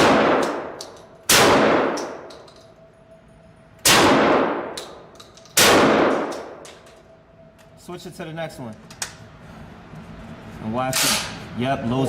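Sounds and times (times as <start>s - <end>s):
shotgun shots: 0.0s - 2.3s, 3.8s - 4.8s, 5.6s - 6.6s.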